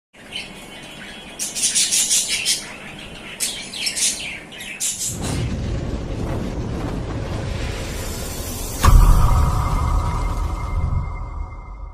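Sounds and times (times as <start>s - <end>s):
budgerigars chirping: 0.2s - 5.2s
steady low rumble: 5.1s - 11.9s.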